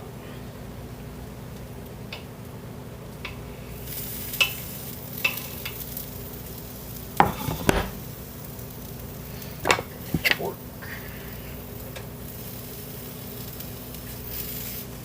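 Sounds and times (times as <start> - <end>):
omelette sizzling in a pan: 1.2 - 15.0
utensil clicking on a pan: 4.3 - 6.0
knocks and scrapes on a pan: 7.2 - 8.0.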